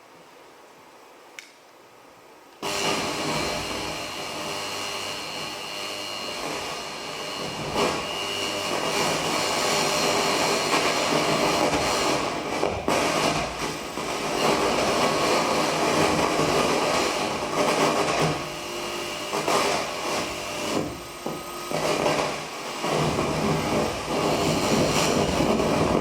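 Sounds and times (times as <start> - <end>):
faint click: 1.3 - 1.6
loud noise drone with high tones: 2.6 - 26.0.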